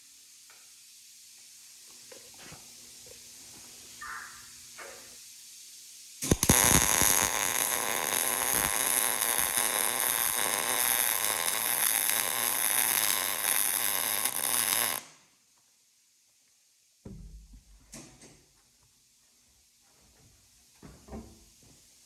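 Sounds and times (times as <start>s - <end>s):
welding arc crackling buzz: 6.2s - 15.2s
welding arc pops: 6.2s - 15.2s.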